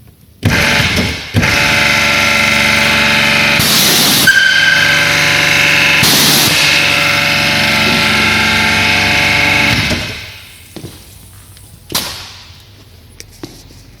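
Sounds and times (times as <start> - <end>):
pressure washer whistle: 0.5 - 10.6.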